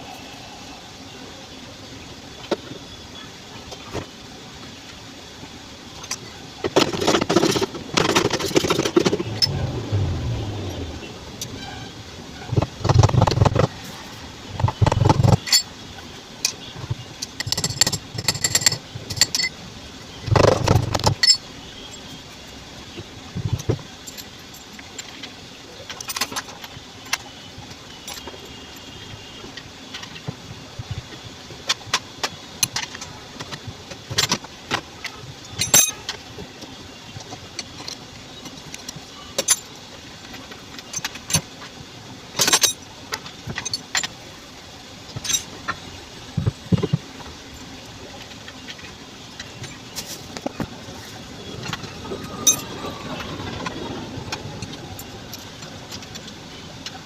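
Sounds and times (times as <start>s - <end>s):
steady low hum: 0.0s - 25.8s
falling whine: 6.2s - 16.1s, 47.6s - 57.0s
metal tools clinking: 17.3s - 19.6s, 21.1s - 22.1s, 51.6s - 52.8s.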